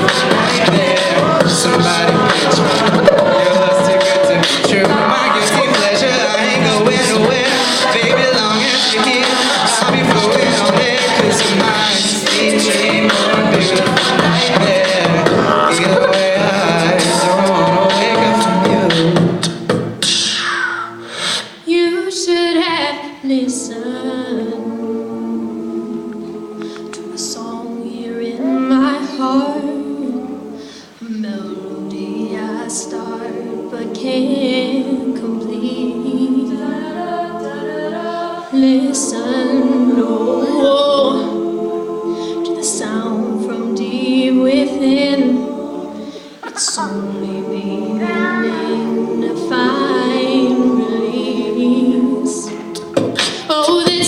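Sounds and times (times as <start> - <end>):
a cappella group singing: 0.0 - 54.0
vocal percussion clicks and hisses: 26.1 - 27.1, 52.7 - 53.6.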